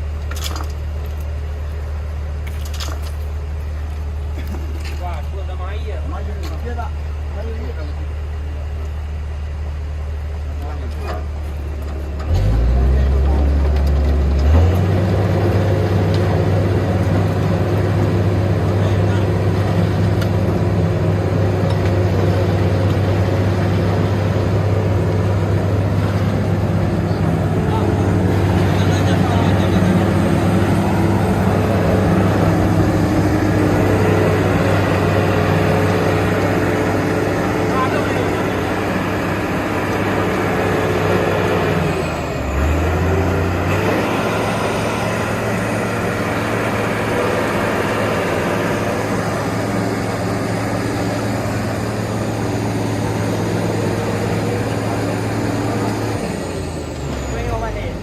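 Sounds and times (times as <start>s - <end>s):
truck diesel engine running: 0.0s - 58.0s
deeper hum: 12.3s - 56.8s.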